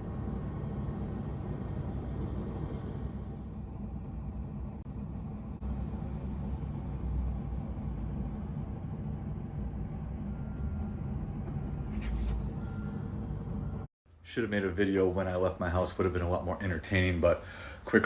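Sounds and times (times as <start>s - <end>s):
vehicle rumble: 0.0s - 13.9s.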